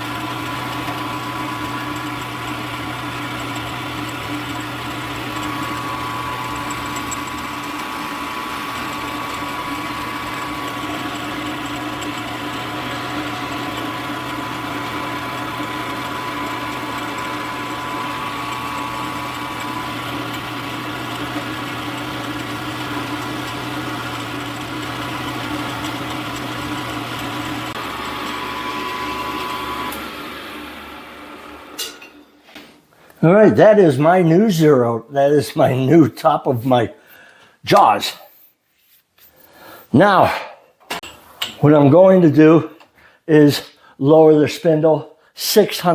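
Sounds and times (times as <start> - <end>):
milling machine humming and whining: 0.0 - 32.2.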